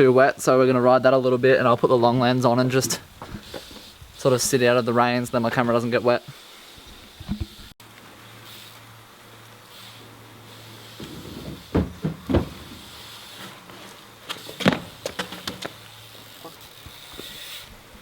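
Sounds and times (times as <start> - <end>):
bike knocking on wooden ramp: 10.9 - 15.8
clattering knocks and rattles: 11.0 - 13.2.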